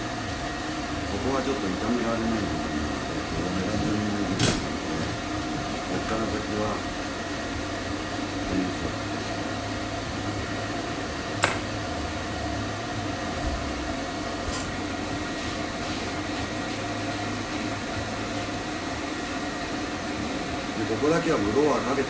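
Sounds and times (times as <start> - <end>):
dryer fan whirring: 0.0 - 22.0
sharp click: 11.4 - 11.7.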